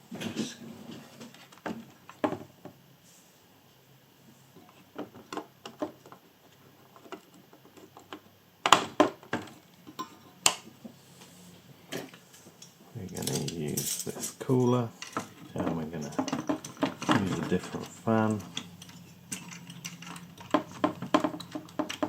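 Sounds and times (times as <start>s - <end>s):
computer parts clicking and knocking: 13.1s - 22.0s.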